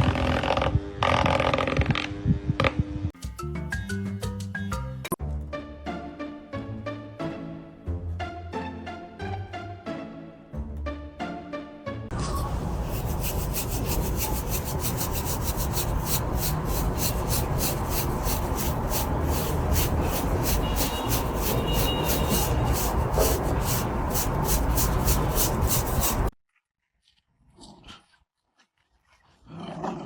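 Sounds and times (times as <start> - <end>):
rhythmic scraping: 12.1 - 26.3.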